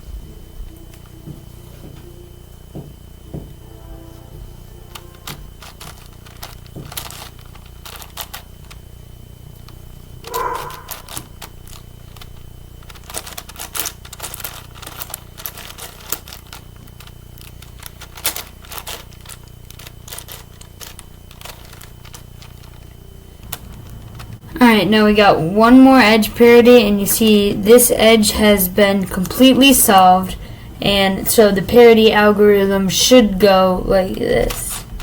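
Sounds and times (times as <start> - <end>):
brief hum: 3.4 - 6.2, 10.2 - 11.6
puzzle cube plastic clicks: 4.9 - 8.8, 10.7 - 24.4.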